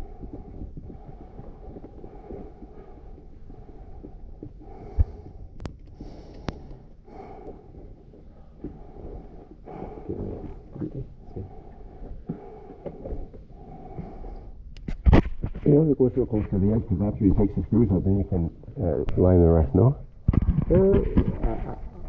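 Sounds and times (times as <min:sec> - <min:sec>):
breathing in and out: 0:00.0 - 0:14.7.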